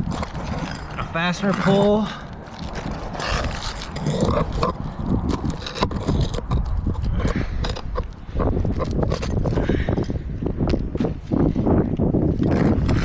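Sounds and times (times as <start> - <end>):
tools scraping shingles: 0.0 - 10.0
wind rumble on microphone: 0.0 - 13.0.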